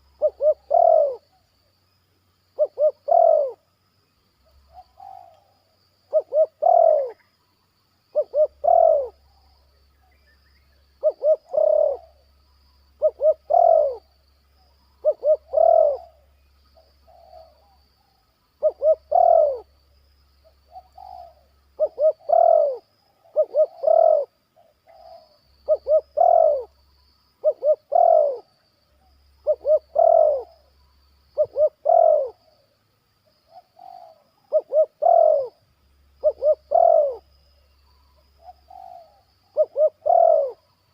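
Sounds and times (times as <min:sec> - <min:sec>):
dove cooing: 0:00.0 - 0:01.4, 0:02.6 - 0:03.6, 0:04.7 - 0:07.3, 0:08.1 - 0:10.1, 0:11.0 - 0:12.2, 0:13.0 - 0:14.2, 0:15.0 - 0:17.8, 0:18.6 - 0:19.7, 0:20.6 - 0:26.8, 0:27.4 - 0:30.7, 0:31.4 - 0:32.7, 0:33.4 - 0:35.6, 0:36.2 - 0:37.4, 0:38.1 - 0:40.7.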